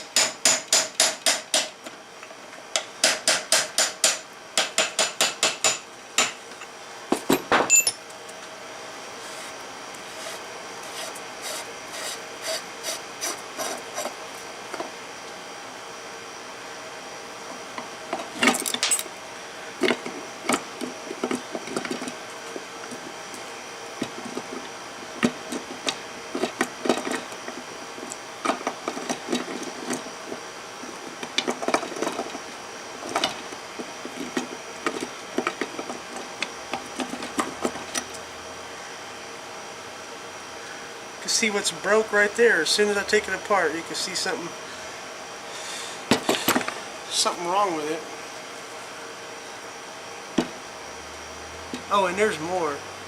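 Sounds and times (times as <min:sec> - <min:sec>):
metal parts knocking and scraping: 0:07.2 - 0:08.0.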